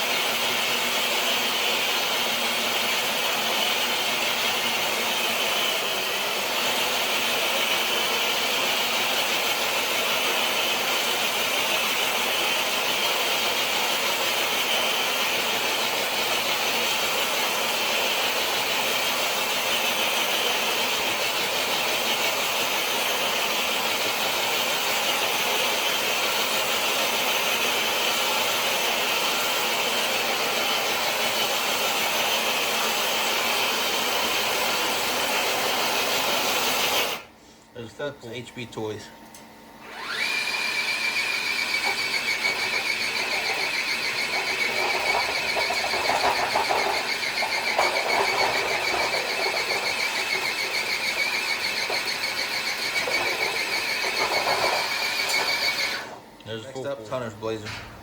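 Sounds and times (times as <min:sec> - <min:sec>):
electric motor whir: 0:39.8 - 0:56.2
sled scraping on concrete: 0:41.7 - 0:56.1.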